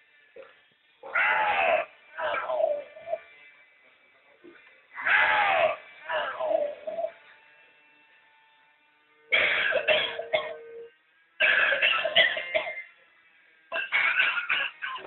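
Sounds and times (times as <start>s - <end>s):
recorded coughing through small speaker: 5.6s - 6.7s, 9.3s - 10.8s, 11.4s - 13.0s, 13.7s - 15.0s.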